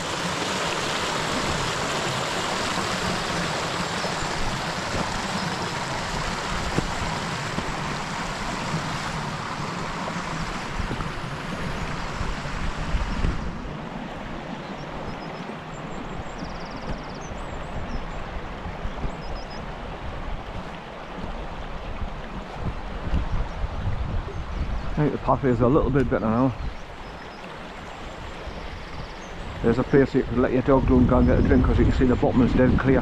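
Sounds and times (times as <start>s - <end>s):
stream rushing over rocks: 0.0s - 33.0s.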